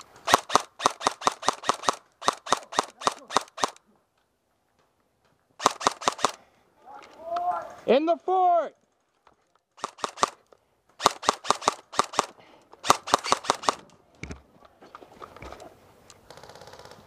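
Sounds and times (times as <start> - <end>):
airsoft gun shots: 0.2 - 3.8, 5.6 - 6.4, 9.8 - 10.4, 11.0 - 13.8.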